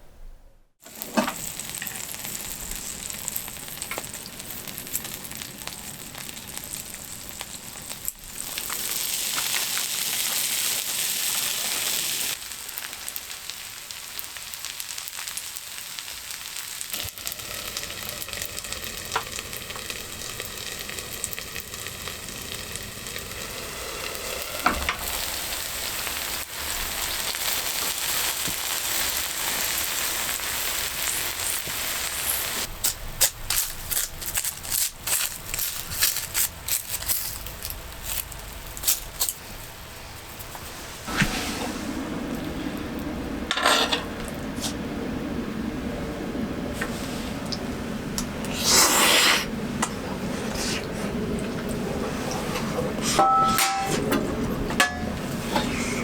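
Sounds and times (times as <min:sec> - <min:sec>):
food sizzling in a pan: 0:00.8 - 0:39.7.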